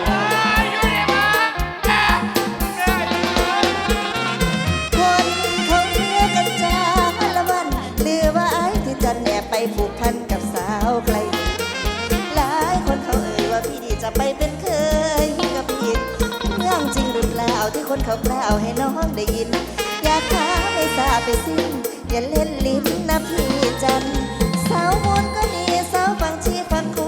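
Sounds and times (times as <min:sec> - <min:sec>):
live band playing: 0:00.0 - 0:27.0
steady drum beat: 0:00.0 - 0:27.0.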